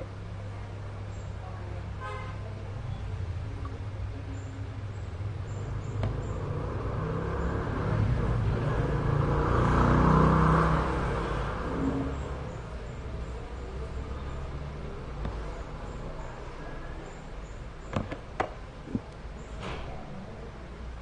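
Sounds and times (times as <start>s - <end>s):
motor vehicle passing by: 5.3s - 16.6s.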